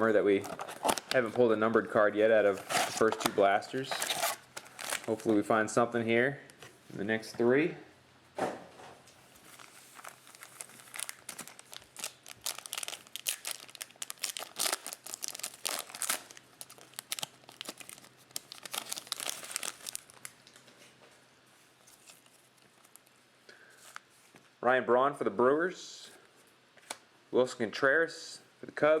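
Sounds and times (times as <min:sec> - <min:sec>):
wrapper tearing and crinkling: 0:00.3 - 0:01.4, 0:02.5 - 0:05.3, 0:09.4 - 0:20.6.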